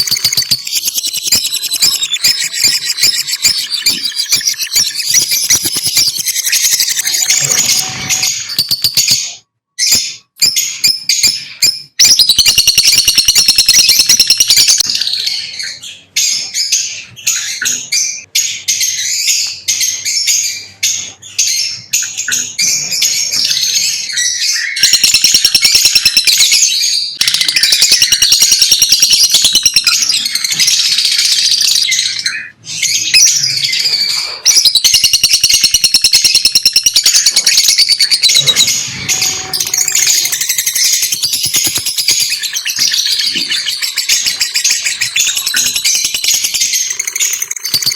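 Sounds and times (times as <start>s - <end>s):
lovebirds chattering and chirping: 0.0s - 47.9s.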